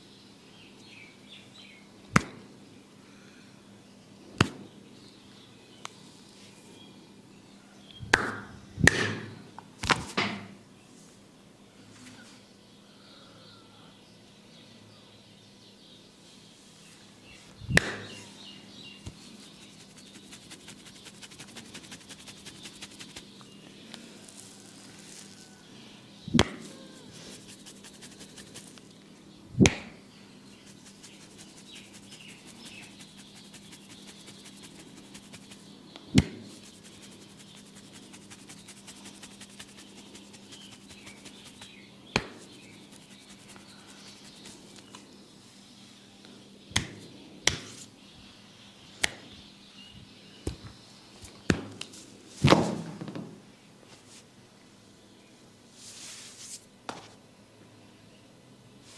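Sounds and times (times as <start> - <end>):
loud sharp smack: 8.1 - 10.4, 26.3 - 26.6, 29.6 - 29.9
hands tapping and rubbing head: 19.0 - 25.4, 26.3 - 28.9, 30.6 - 45.0.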